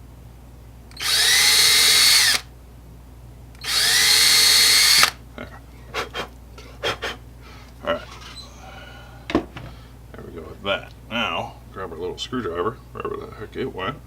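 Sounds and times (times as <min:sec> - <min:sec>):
power drill boring into wood: 0:00.9 - 0:02.4, 0:03.6 - 0:05.2.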